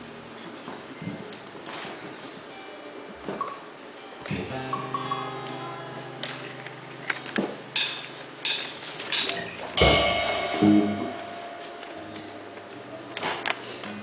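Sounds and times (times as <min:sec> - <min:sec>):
tom drum hit: 0:09.8 - 0:12.0
cymbal crash: 0:09.8 - 0:12.9
held low instrument note: 0:09.8 - 0:13.2.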